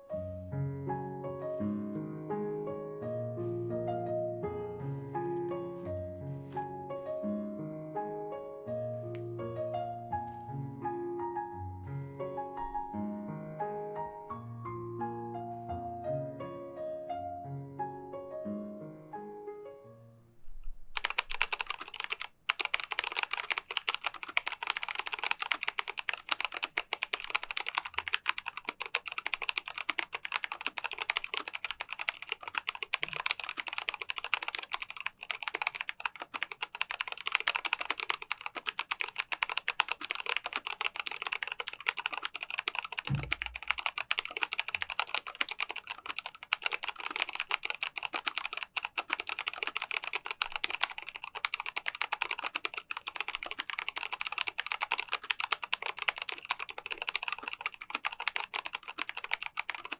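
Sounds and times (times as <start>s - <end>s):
fast typing on mechanical keyboard: 20.9s - 59.9s.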